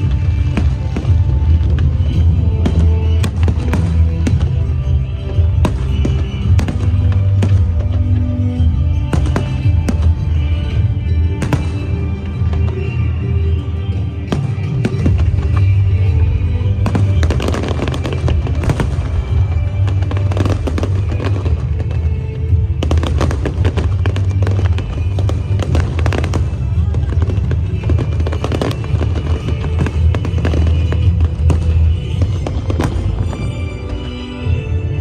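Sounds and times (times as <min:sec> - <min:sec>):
fireworks bursting and crackling: 0:00.0 - 0:35.0.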